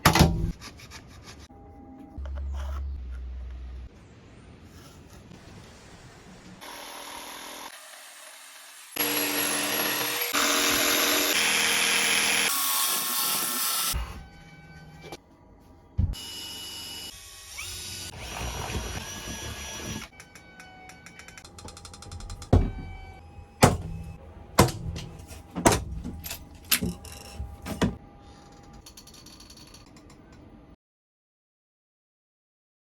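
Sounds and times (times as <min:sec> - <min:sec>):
power tool running: 0:06.6 - 0:14.0
loud sharp knocks: 0:23.6 - 0:25.9.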